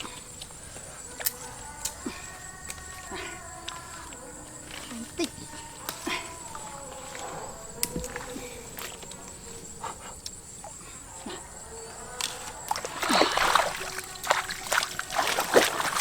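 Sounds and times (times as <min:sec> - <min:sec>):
high-pitched insect drone: 0:00.0 - 0:16.0
water splashing and sloshing: 0:00.0 - 0:16.0.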